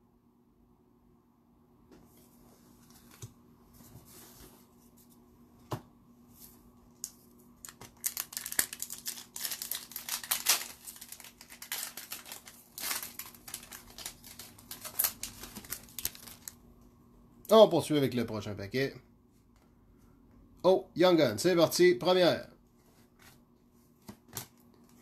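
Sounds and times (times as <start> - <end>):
card pack wrapper crinkling: 7.0 - 16.6.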